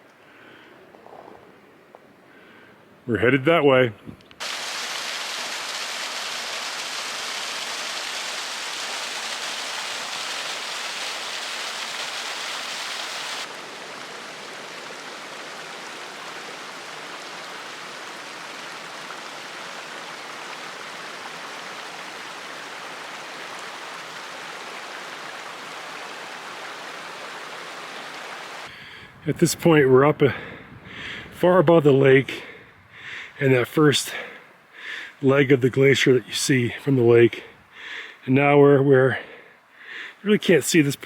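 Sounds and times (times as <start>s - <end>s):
running water rushing: 4.4s - 28.7s.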